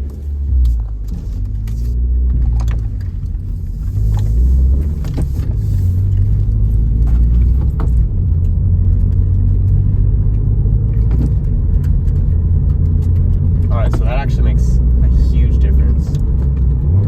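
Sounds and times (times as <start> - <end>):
car exhaust rumble: 0.0 - 17.0.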